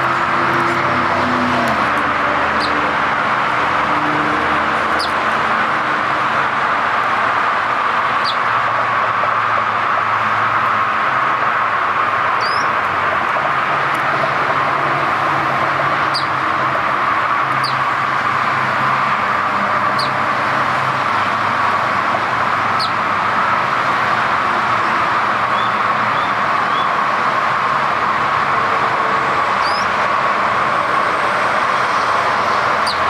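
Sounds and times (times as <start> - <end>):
loud background noise: 0.0 - 33.0
sparrow chirping: 8.2 - 8.4, 12.4 - 12.7, 16.1 - 16.3, 17.6 - 17.8, 19.9 - 20.2, 22.8 - 23.0, 29.6 - 29.9, 32.8 - 33.0.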